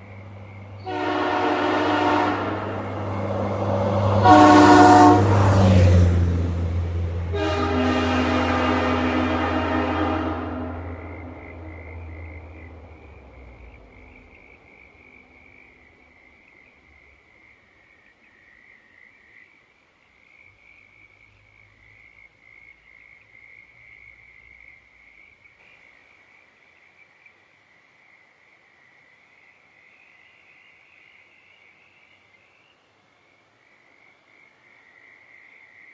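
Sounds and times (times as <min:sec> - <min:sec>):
frogs calling: 0:00.0 - 0:05.8, 0:10.4 - 0:35.9
locomotive horn echo: 0:00.8 - 0:12.3.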